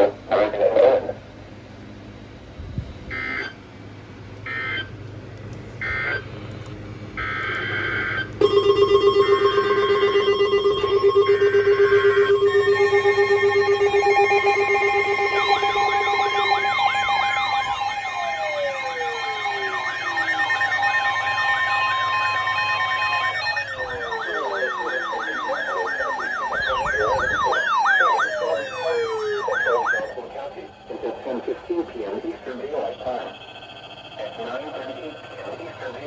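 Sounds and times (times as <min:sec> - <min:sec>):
siren wailing: 0:03.1 - 0:03.7, 0:04.4 - 0:05.0, 0:05.8 - 0:06.5, 0:07.1 - 0:36.0
steady alert tones: 0:07.2 - 0:35.8
two-tone digital data tones: 0:07.2 - 0:35.9.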